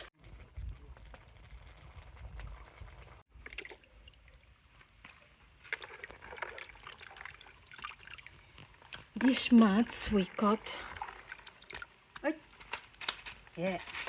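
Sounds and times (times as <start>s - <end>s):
water sloshing and splashing: 3.3s - 14.0s.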